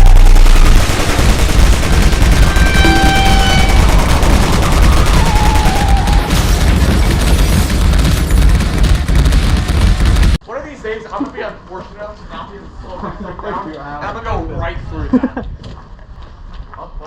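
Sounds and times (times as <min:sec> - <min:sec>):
airsoft guns firing: 0:00.0 - 0:10.3
loud low rumble: 0:00.0 - 0:10.4.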